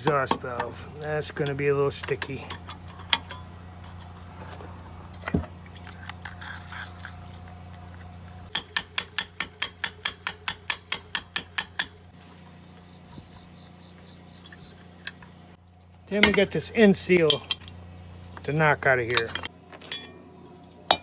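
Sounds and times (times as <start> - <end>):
steady low hum: 0.0 - 11.2.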